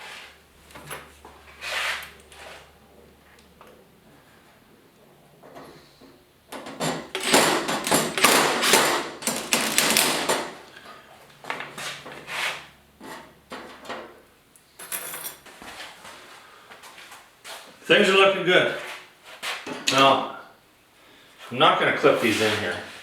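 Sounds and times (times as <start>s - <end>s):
rattling and knocking on sheet metal: 6.6s - 10.6s.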